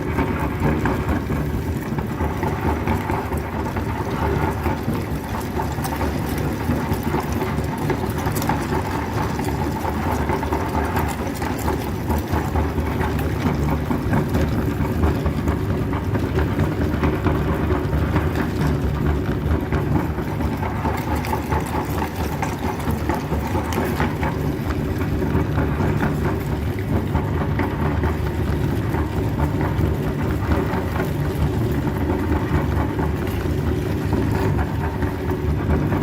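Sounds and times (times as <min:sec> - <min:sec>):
meat grinder motor humming: 0:00.0 - 0:36.0.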